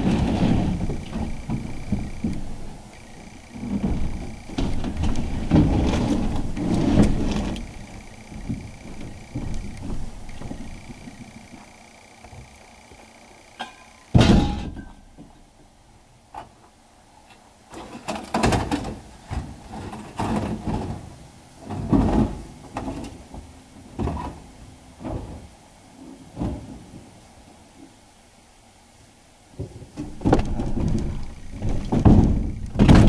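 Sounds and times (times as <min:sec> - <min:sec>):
scrap metal clanks and thumps: 0:00.0 - 0:11.7, 0:13.6 - 0:15.3, 0:17.7 - 0:24.4, 0:29.9 - 0:33.0
loud metal bang: 0:13.6 - 0:15.0.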